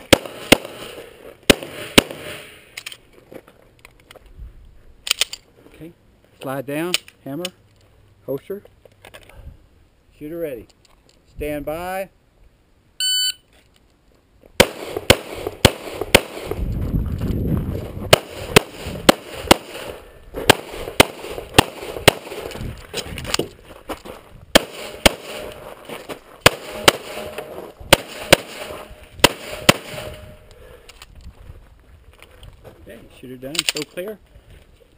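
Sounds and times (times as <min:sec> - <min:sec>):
pistol shots: 0:00.0 - 0:00.9, 0:01.5 - 0:02.5, 0:14.6 - 0:16.6, 0:18.1 - 0:22.5, 0:24.5 - 0:25.6, 0:26.4 - 0:30.4.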